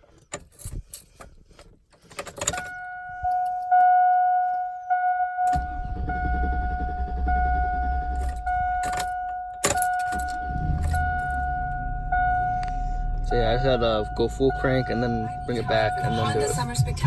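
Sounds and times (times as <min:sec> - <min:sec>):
keys jangling: 0:00.1 - 0:03.7, 0:08.2 - 0:11.4
warning chime: 0:02.5 - 0:17.0
truck engine running: 0:05.6 - 0:17.0.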